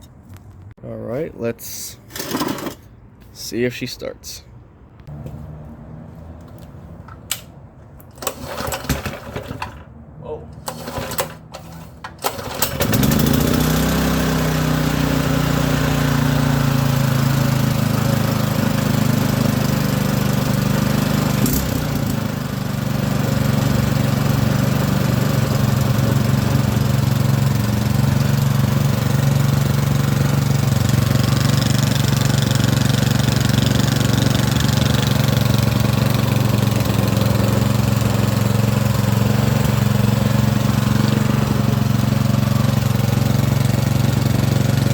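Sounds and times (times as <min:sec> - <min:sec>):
pull cord starting: 0:07.3 - 0:09.8, 0:10.6 - 0:14.1
small engine running: 0:12.2 - 0:44.9.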